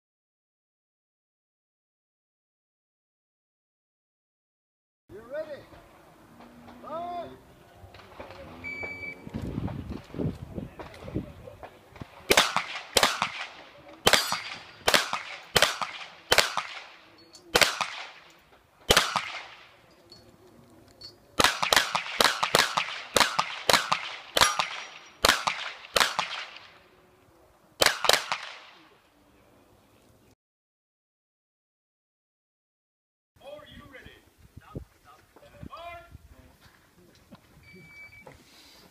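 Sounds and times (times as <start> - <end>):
pistol shots echoing: 12.2 - 19.8, 21.4 - 26.8, 27.8 - 28.8.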